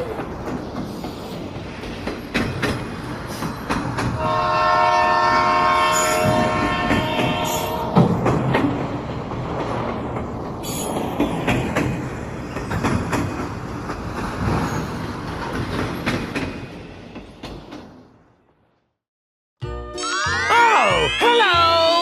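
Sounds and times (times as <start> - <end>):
train wheel clacks: 0.0 - 4.2, 6.0 - 18.1
train rumbling on rails: 0.0 - 18.8.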